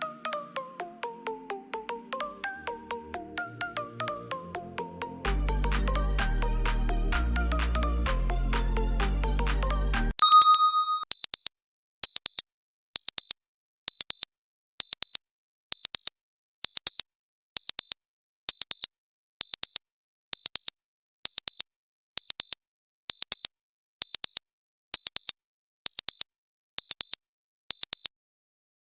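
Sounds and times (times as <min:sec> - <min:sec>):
electronic double beep: 0:10.2 - 0:11.1.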